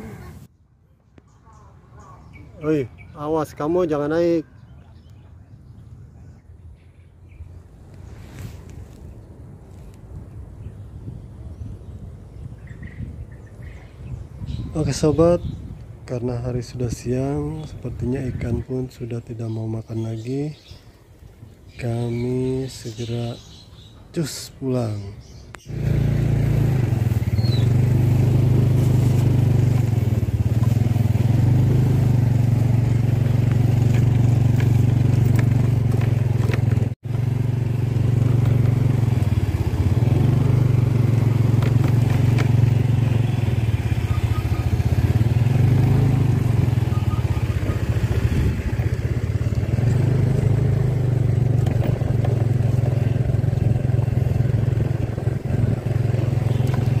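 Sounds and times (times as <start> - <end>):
motorcycle engine running: 25.6 - 57.0.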